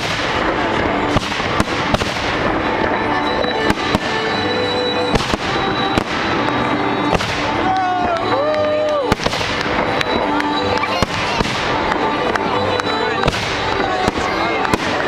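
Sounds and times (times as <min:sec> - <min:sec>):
fireworks bangs: 0:00.0 - 0:15.0
rumbling and crackling fireworks: 0:00.0 - 0:15.0.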